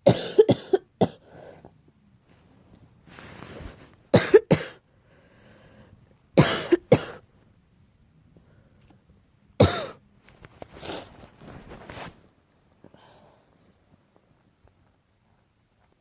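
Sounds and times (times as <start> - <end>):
person barking cough: 0.0 - 1.2, 4.2 - 4.8, 6.4 - 7.2, 9.6 - 10.0.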